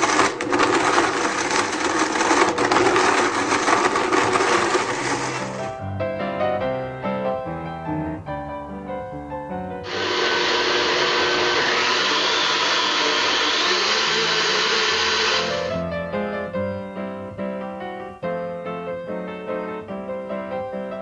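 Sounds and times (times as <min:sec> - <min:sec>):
blender motor running: 0:00.0 - 0:05.7, 0:09.8 - 0:15.7
piano music: 0:00.0 - 0:11.6, 0:14.2 - 0:21.0.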